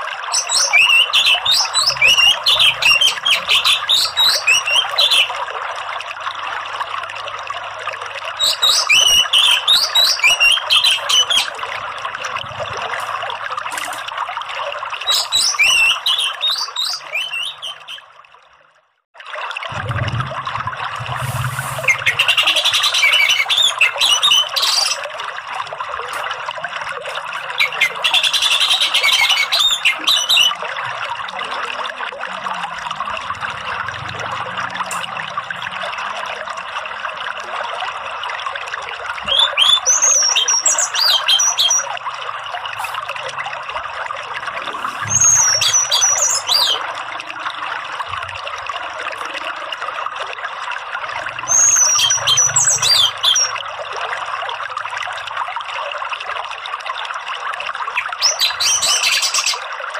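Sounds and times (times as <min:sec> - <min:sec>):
running water: 0:00.0 - 0:59.9
thrush singing whistles and chatter: 0:00.3 - 0:05.4, 0:08.4 - 0:11.6, 0:15.0 - 0:18.0, 0:21.8 - 0:25.0, 0:27.5 - 0:30.6, 0:39.2 - 0:41.9, 0:45.0 - 0:46.9, 0:51.4 - 0:53.6, 0:58.0 - 0:59.6.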